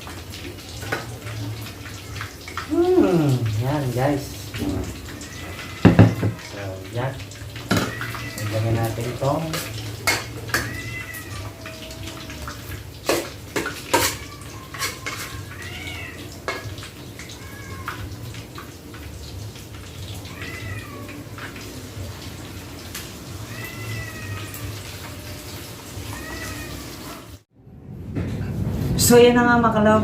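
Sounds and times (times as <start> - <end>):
cat meowing: 4.6 - 18.3, 20.0 - 21.7, 23.3 - 27.4
metal utensils clinking on a pan: 7.6 - 11.2, 13.0 - 15.8, 16.4 - 16.9.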